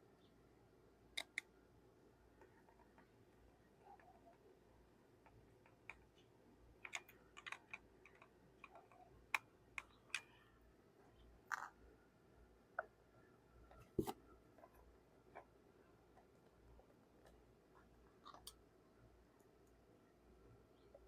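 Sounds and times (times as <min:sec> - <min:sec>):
plastic parts clicking and tapping: 0:05.2 - 0:10.4.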